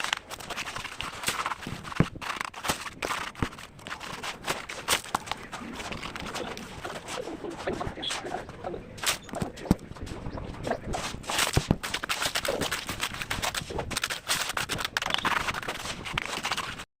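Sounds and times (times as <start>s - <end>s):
scraping: 0.0s - 16.9s
knocks and clicks: 9.0s - 14.1s.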